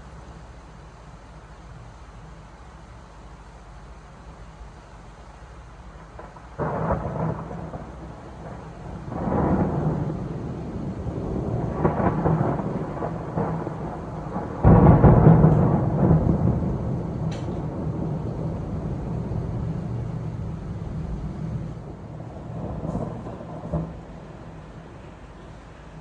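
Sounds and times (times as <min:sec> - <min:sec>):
thunder rumbling and cracking: 0:06.0 - 0:26.0.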